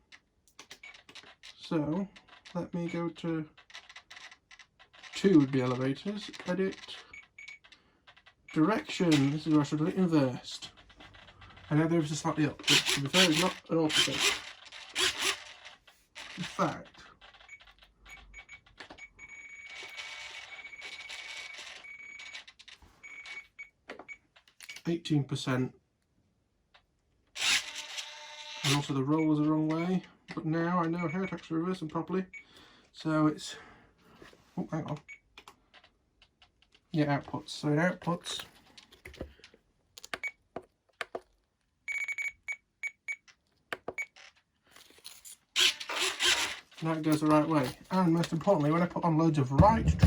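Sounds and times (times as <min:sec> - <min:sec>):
servo whirring: 0:12.6 - 0:15.6, 0:27.4 - 0:28.9, 0:45.0 - 0:48.7.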